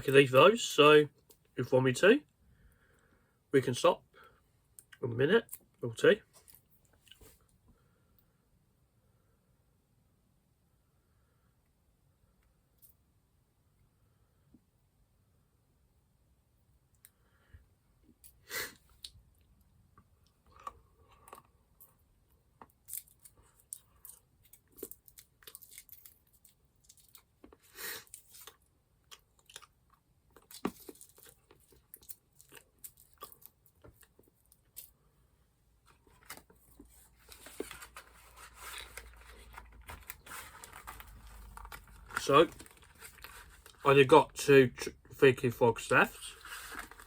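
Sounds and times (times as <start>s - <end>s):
chewing and crunching snacks: 18.2s - 35.0s
packaging rustling: 35.9s - 43.8s, 46.4s - 47.0s.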